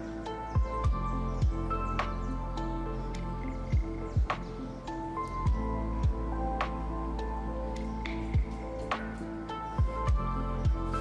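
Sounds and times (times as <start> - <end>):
deep kick drum: 3.7 - 4.3, 5.5 - 6.2, 9.8 - 10.8.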